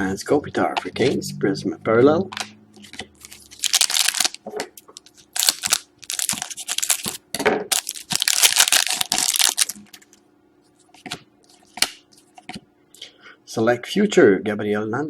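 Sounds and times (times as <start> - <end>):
cards and foil wrapper crinkling: 2.8 - 10.2.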